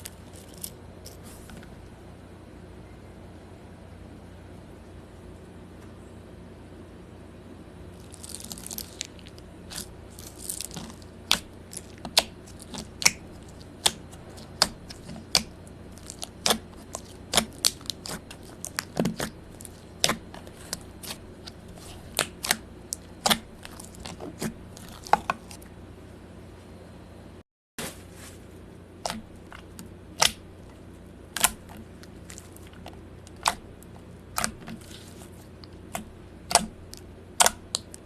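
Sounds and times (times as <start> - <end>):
crackling rustle: 7.9 - 25.6.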